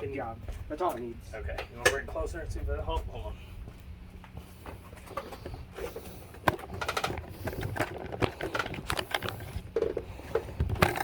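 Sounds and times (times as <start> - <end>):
camera handling clicks and rustles: 6.4 - 10.0.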